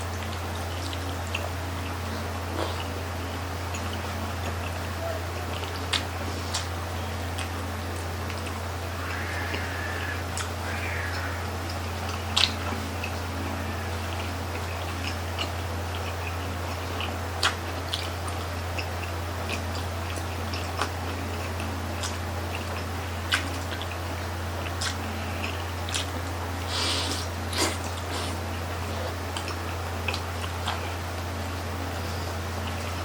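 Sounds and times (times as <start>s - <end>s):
low hum: 0.0s - 23.3s
wet mouth clicks and smacks: 17.4s - 18.1s, 24.8s - 25.0s, 25.9s - 26.1s.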